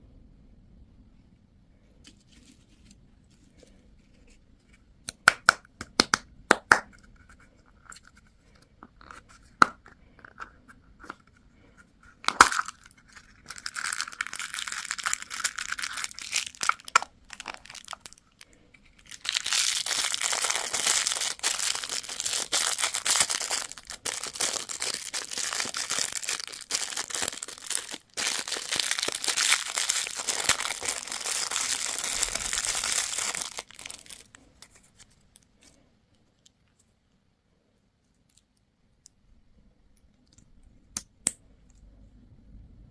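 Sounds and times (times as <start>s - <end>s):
packaging tearing and crinkling: 12.2s - 18.4s, 19.0s - 34.4s.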